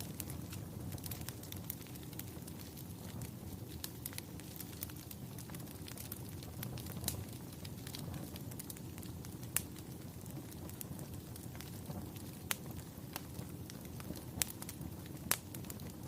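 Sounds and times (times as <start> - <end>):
fire popping: 0.0 - 16.0
fire rumbling: 0.0 - 16.0.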